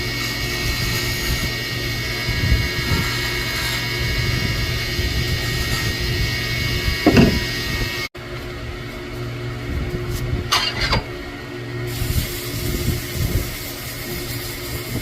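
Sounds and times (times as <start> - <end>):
wood lathe running: 0.0 - 7.6
thump: 7.1 - 7.4.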